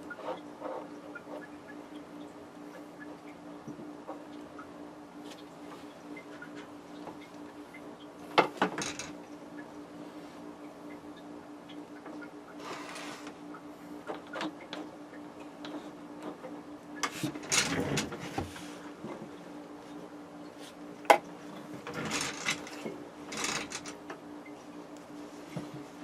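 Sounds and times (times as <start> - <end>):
low background hum: 0.0 - 26.0
wires rustling and clicking: 8.3 - 9.3, 14.0 - 24.2.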